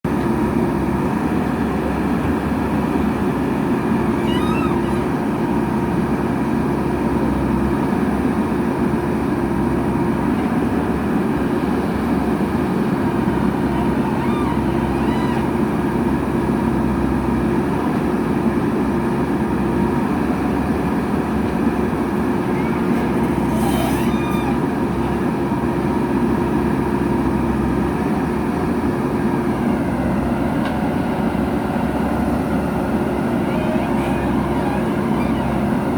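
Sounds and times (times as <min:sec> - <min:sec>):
diesel engine running: 0:00.0 - 0:35.9
brief high squeaks: 0:04.0 - 0:05.9, 0:13.1 - 0:15.9, 0:22.3 - 0:25.4, 0:33.3 - 0:35.9.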